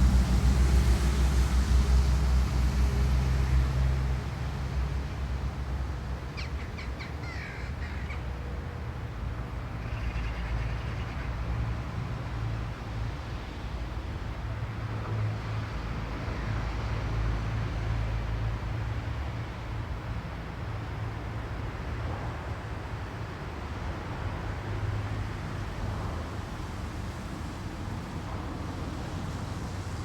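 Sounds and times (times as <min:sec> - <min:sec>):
crow cawing: 0:06.4 - 0:08.2.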